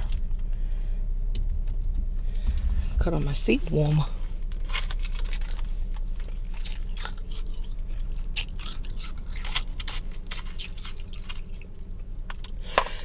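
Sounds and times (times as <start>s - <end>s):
person chewing frost: 4.6s - 13.0s.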